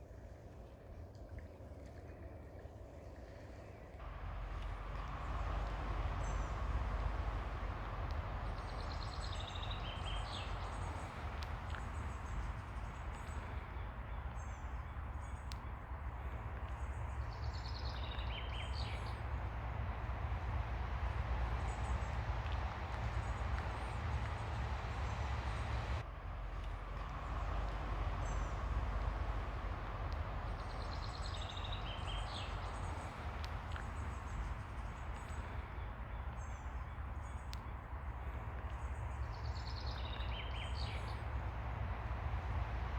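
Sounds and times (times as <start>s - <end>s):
ocean surf washing onto beach: 4.0s - 35.8s
birds chirping: 4.0s - 42.9s.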